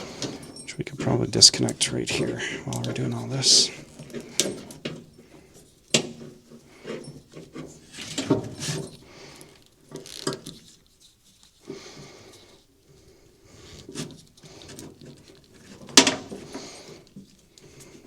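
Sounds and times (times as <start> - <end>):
wires rustling: 0.0 - 12.4.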